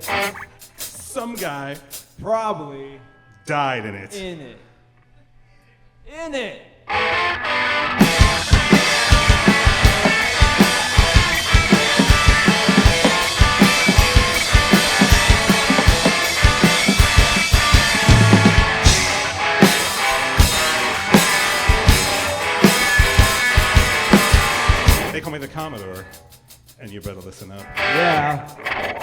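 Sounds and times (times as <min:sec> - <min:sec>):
distorted electric guitars: 0:00.0 - 0:02.0, 0:06.8 - 0:26.4, 0:27.5 - 0:29.0
drum kit: 0:00.0 - 0:02.2, 0:08.0 - 0:29.0
bass guitar: 0:07.0 - 0:25.2.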